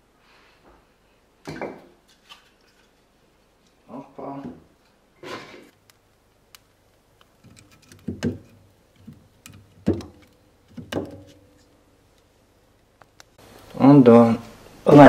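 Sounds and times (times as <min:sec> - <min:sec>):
firewood knocking in stove: 0:07.9 - 0:09.2, 0:09.8 - 0:11.4.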